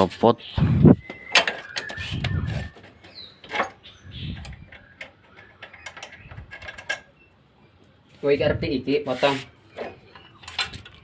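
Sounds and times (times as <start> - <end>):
hand tools and metal parts clinking: 1.0 - 7.4, 9.0 - 11.0.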